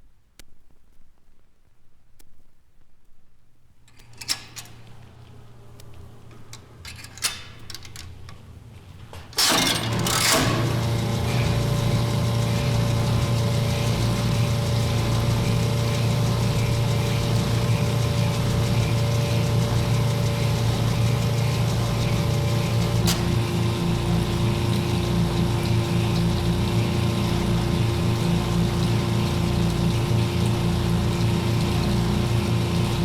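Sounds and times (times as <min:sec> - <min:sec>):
machine humming: 0:09.4 - 0:33.0.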